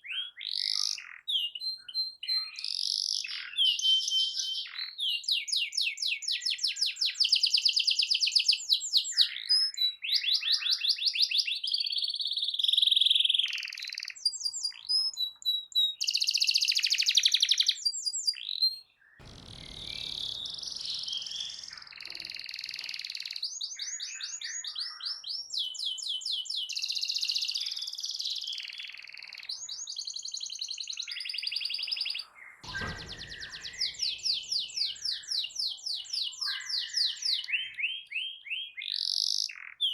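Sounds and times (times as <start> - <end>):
short low rumble: 19.2 - 22.4.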